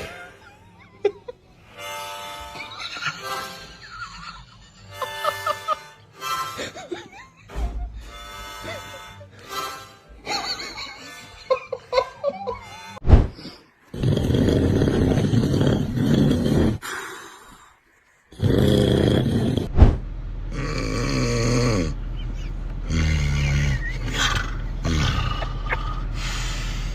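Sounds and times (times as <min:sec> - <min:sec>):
loud human snoring: 0:13.9 - 0:17.1, 0:18.3 - 0:19.8, 0:20.5 - 0:22.0, 0:22.8 - 0:26.9.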